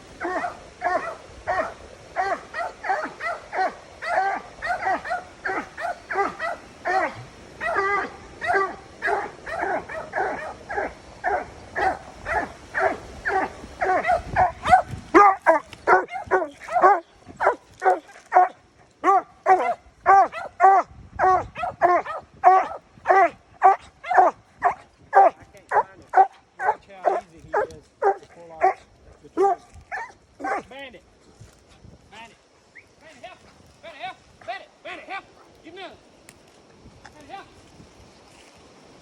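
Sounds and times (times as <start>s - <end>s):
dog barking: 0.2s - 30.7s.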